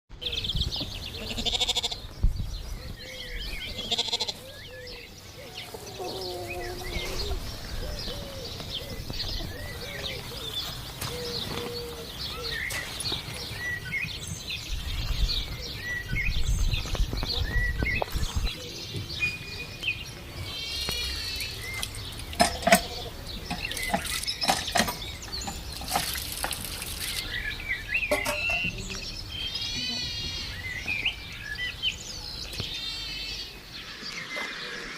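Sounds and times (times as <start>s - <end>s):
low rounded bird calls: 0.1s - 34.9s
wavering bird trill: 27.2s - 29.0s.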